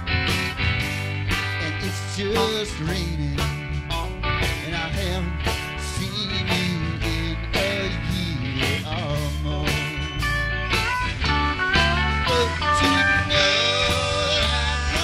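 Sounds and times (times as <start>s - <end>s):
bass guitar: 0.0s - 15.0s
electric guitars: 0.0s - 15.0s
pedal steel guitar: 0.0s - 15.0s
steady drums: 0.0s - 15.0s.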